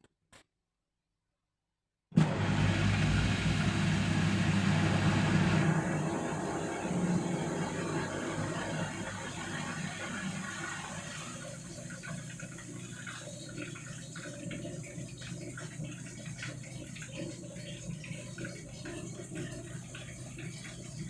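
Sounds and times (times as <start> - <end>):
washing machine water sloshing: 4.2 - 21.0.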